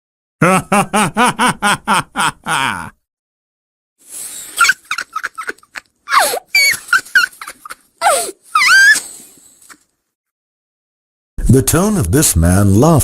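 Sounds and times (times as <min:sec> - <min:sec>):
child giggling: 0:04.6 - 0:09.0
child shrieking: 0:08.0 - 0:09.0.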